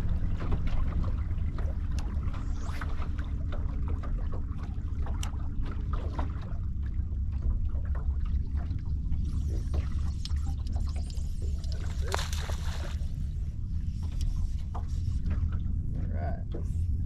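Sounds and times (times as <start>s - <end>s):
low rumble: 0.0s - 17.0s
water trickling: 7.8s - 13.4s.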